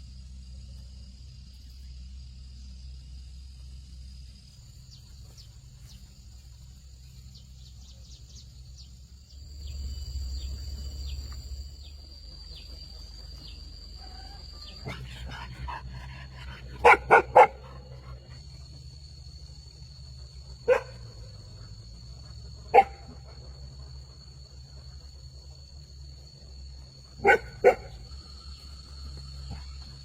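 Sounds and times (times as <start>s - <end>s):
dog barking: 14.6s - 18.4s, 20.6s - 21.1s, 22.7s - 23.4s, 27.2s - 28.0s.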